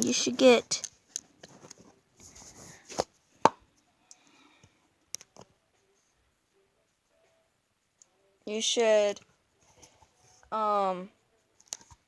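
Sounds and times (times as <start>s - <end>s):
soft rustle: 0.7s - 3.4s.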